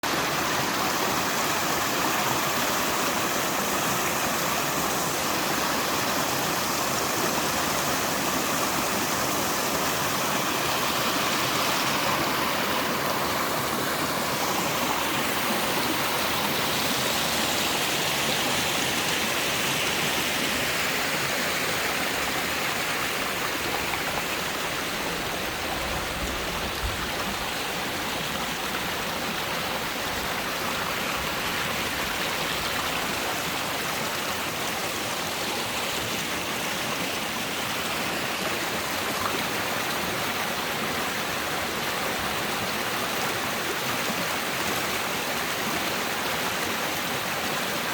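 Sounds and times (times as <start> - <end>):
stream rushing: 0.0 - 47.9.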